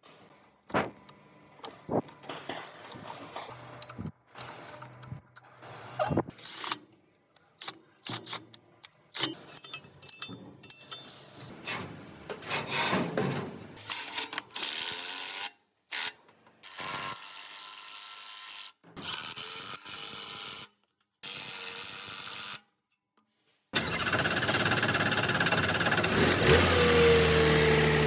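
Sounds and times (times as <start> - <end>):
hand tool scraping and rubbing: 5.6 - 6.8, 10.8 - 13.1.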